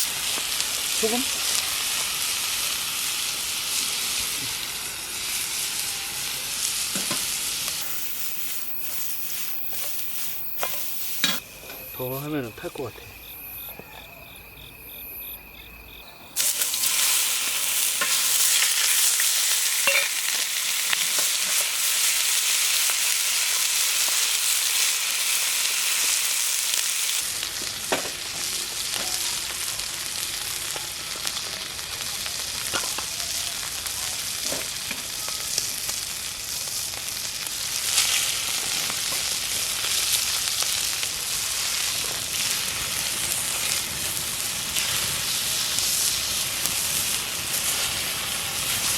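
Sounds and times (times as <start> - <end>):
meat sizzling: 0.0 - 12.7, 15.9 - 48.9
crickets chirping: 7.8 - 20.6.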